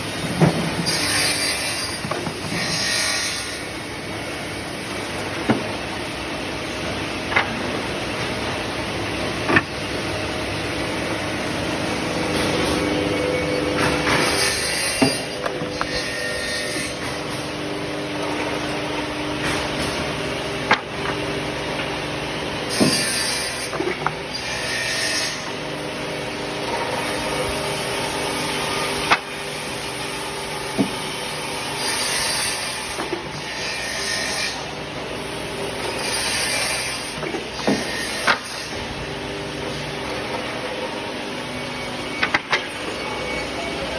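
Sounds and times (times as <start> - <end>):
saw cutting wood slats: 0.0 - 43.4
saw motors humming: 0.0 - 43.9.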